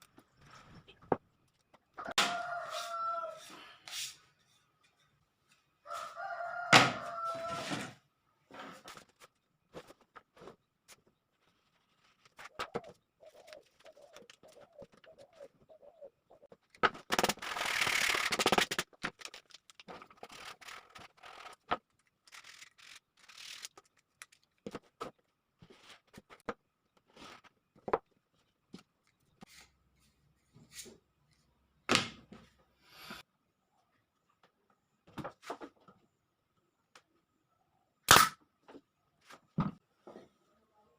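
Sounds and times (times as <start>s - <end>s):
dove cooing: 12.5s - 16.5s.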